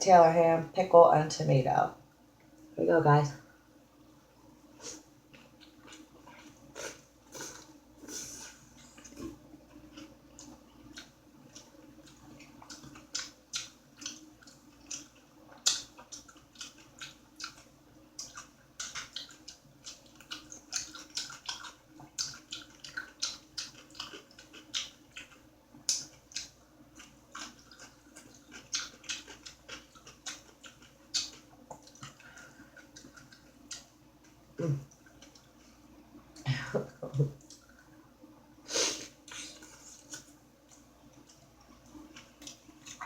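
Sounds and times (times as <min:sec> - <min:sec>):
faint low hum: 0:00.0 - 0:43.0
wet chewing: 0:04.8 - 0:35.6, 0:39.2 - 0:43.0.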